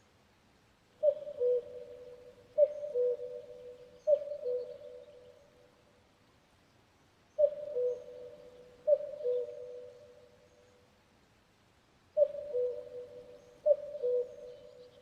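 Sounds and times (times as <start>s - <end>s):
cuckoo calling: 1.0s - 5.4s, 7.4s - 10.3s, 12.2s - 15.0s.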